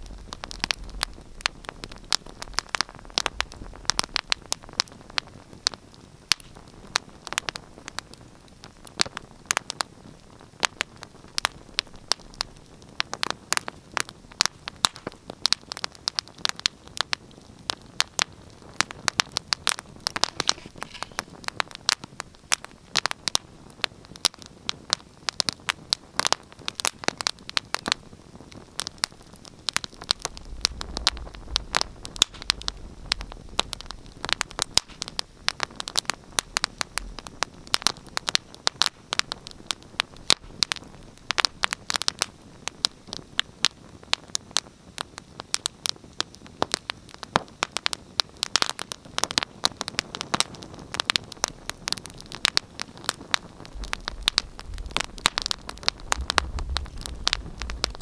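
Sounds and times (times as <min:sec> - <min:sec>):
fireplace fire crackling: 0:00.0 - 0:58.0
sharp pops of fire: 0:00.0 - 0:58.0
low rumble: 0:30.2 - 0:34.6, 0:53.6 - 0:58.0.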